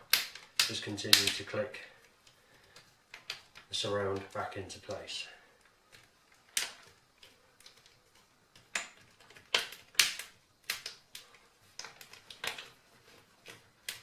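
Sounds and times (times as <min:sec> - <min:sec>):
plastic clips snapping into place: 0:00.1 - 0:01.4.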